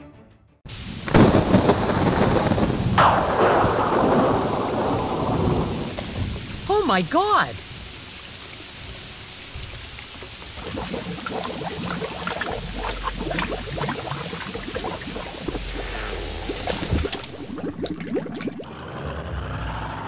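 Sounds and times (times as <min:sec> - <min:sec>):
rain falling: 0:00.7 - 0:17.8
drips and splashes: 0:03.2 - 0:18.7.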